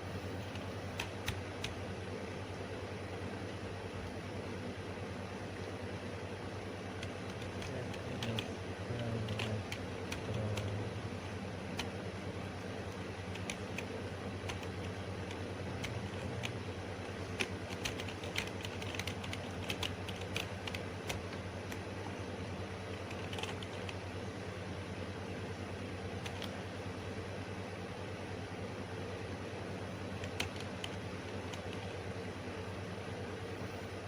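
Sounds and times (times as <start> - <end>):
steady background hum: 0.0 - 34.0
keyboard typing clicks: 0.4 - 1.8, 7.0 - 8.5, 9.2 - 10.8, 12.9 - 21.8, 22.9 - 24.0, 26.2 - 26.6, 30.2 - 32.0.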